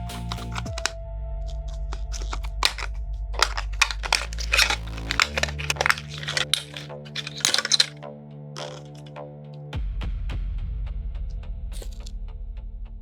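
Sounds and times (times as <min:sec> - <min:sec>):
background music with low notes: 0:00.0 - 0:06.0
plastic boxes clicking and sliding: 0:00.1 - 0:00.9, 0:01.5 - 0:07.9, 0:08.6 - 0:09.1.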